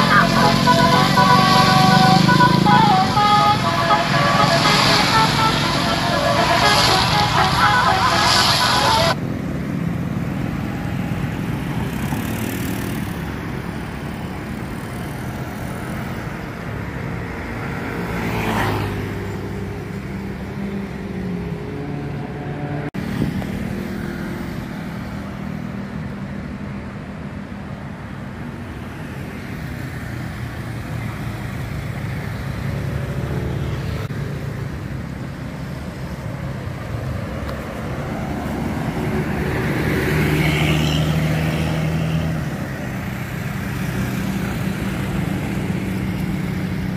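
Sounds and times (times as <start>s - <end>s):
loud rushing sound: 0.0s - 9.2s
vehicle passing close: 0.0s - 16.1s
engines rumbling: 0.0s - 46.9s.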